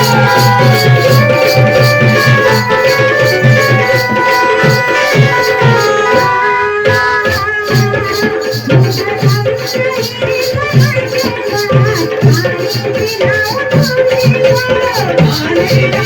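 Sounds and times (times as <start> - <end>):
wavering melody: 0.0 - 10.0
steady drum beat: 0.0 - 16.0.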